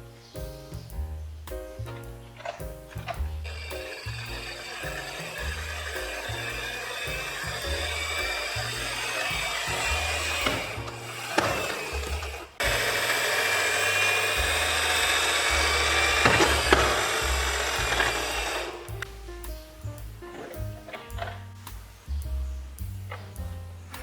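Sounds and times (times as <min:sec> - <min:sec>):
background music with bass line: 0:00.0 - 0:24.0
sharp knocks: 0:01.5 - 0:12.8, 0:13.8 - 0:19.6
toy cars rolling down a slope: 0:03.5 - 0:18.8.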